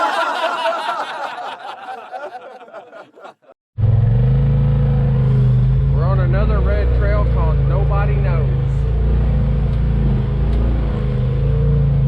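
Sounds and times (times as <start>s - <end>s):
people laughing: 0.0s - 3.6s
vehicle engine running loudly: 3.8s - 10.8s.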